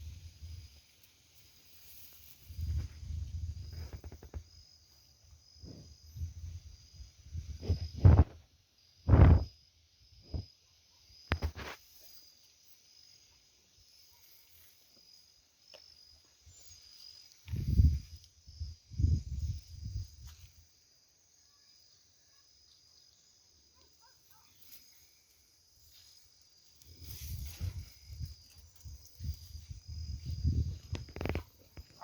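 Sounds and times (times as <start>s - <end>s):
insect trilling: 1.4s - 32.0s.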